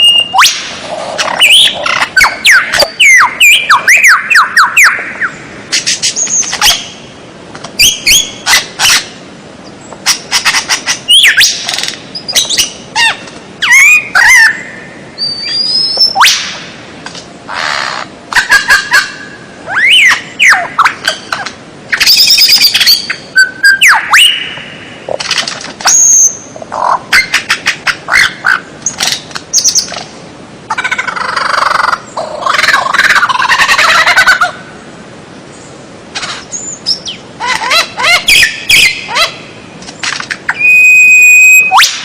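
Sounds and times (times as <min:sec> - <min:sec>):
songbird calls and song: 0:00.0 - 0:00.6, 0:01.2 - 0:07.1, 0:07.8 - 0:16.3, 0:17.5 - 0:25.1, 0:25.8 - 0:30.1, 0:35.5 - 0:42.0.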